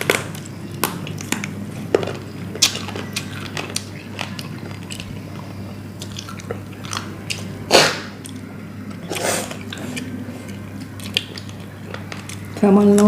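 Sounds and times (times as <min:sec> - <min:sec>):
person chewing food: 0:00.0 - 0:13.0
steady low hum: 0:00.0 - 0:13.0.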